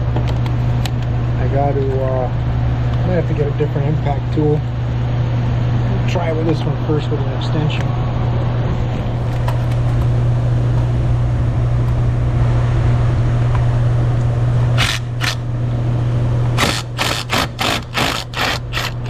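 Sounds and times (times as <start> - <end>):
impact wrench hammering: 14.8 - 15.4, 16.6 - 19.0.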